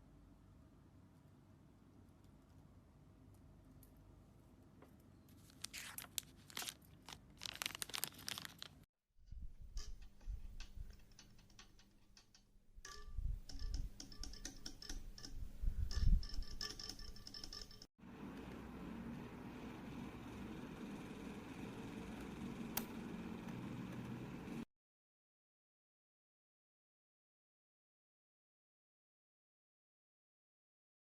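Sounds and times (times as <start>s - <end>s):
mechanical keyboard typing: 9.8s - 17.9s.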